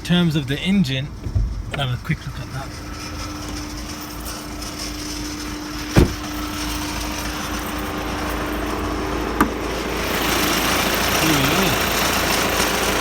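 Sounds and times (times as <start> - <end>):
diesel engine idling: 0.0 - 13.0
sharp knock: 6.0 - 6.3.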